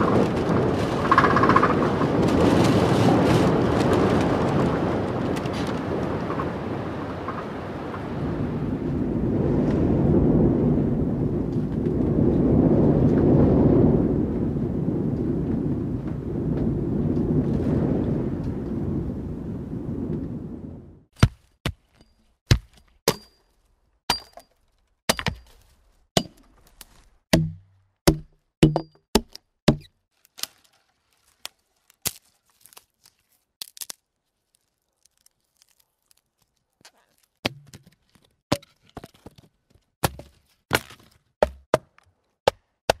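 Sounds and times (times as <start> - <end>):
sharp knocks and cracks: 21.2 - 23.5, 24.1 - 30.7, 36.8 - 43.0.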